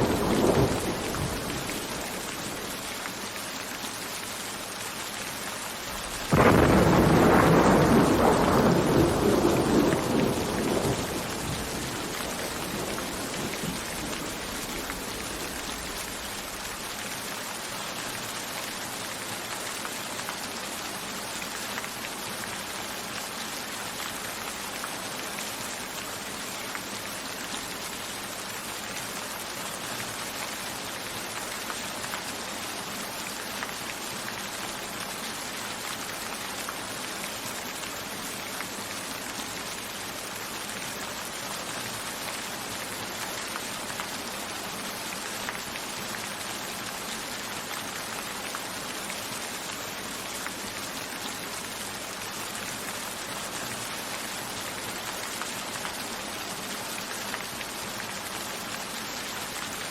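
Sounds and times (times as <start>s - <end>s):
thunder rumble: 0.0s - 2.8s, 6.2s - 16.4s
steady rain: 0.0s - 59.9s.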